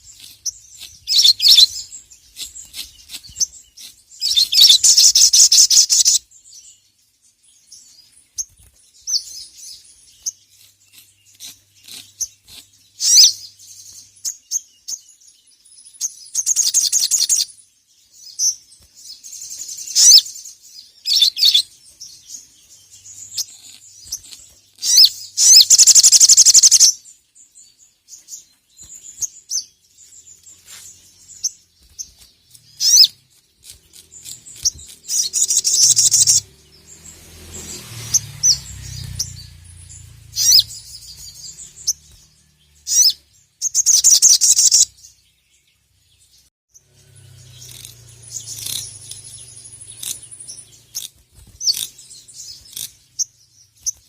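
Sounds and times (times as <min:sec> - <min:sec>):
sunbird chirping and trilling: 0:00.0 - 0:54.0.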